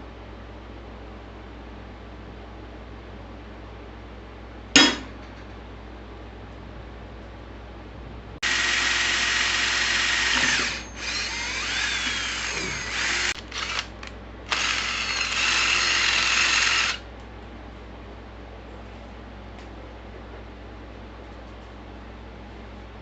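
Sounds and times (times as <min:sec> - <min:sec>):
power drill whine: 0:08.4 - 0:17.0.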